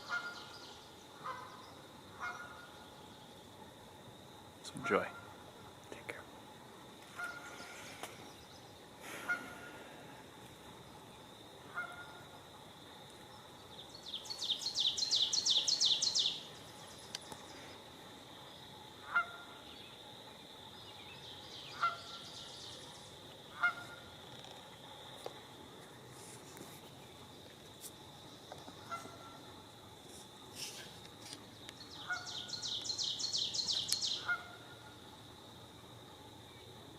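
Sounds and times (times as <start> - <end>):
short chirping calls: 13.9 - 17.6, 31.8 - 34.4.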